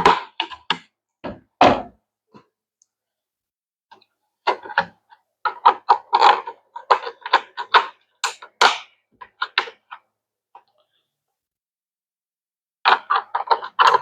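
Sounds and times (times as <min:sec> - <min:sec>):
plastic parts clacking together: 0:04.5 - 0:10.0, 0:12.9 - 0:14.0.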